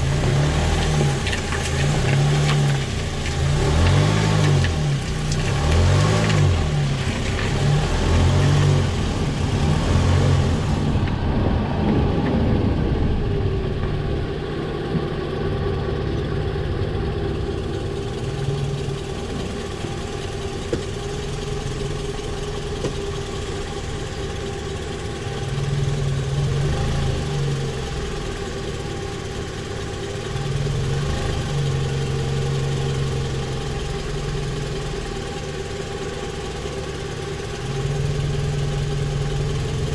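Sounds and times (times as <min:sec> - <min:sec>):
car engine idling: 0:00.0 - 0:39.9
low drone: 0:06.4 - 0:19.1.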